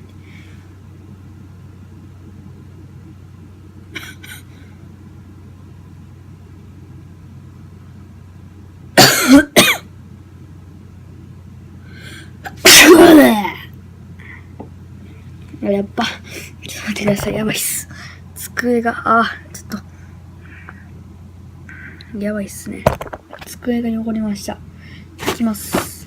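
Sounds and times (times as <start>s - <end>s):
faint breath in: 11.8s - 12.4s, 19.9s - 21.0s, 21.7s - 22.1s, 24.8s - 25.2s
man sneezing loudly: 12.5s - 13.3s.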